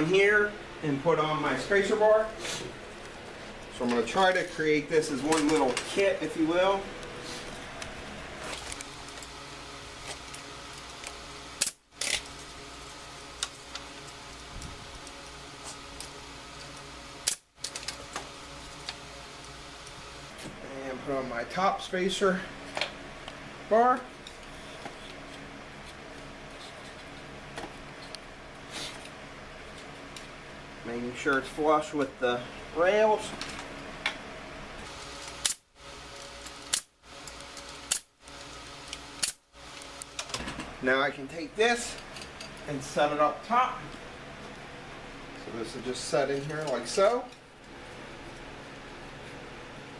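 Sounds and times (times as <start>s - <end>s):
nail gun firing: 11.6s - 11.8s, 35.4s - 35.6s, 36.7s - 36.9s, 37.9s - 38.1s, 39.2s - 39.4s
pneumatic nailer firing into wood: 11.6s - 12.2s, 17.2s - 18.2s, 35.0s - 35.7s, 36.4s - 37.0s, 37.8s - 38.2s, 39.2s - 39.5s.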